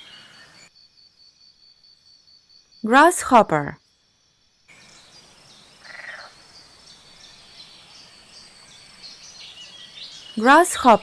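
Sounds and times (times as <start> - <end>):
grasshopper chirps: 4.3 - 11.0.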